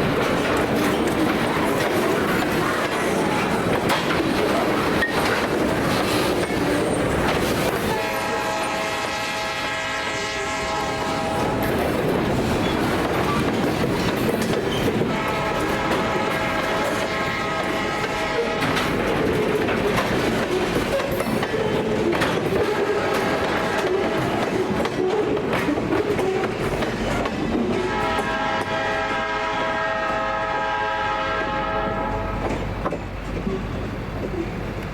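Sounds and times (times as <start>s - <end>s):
freight train passing: 0.0s - 34.9s
locomotive horn blowing: 7.8s - 11.9s, 15.0s - 19.5s, 22.7s - 24.6s, 27.8s - 32.5s.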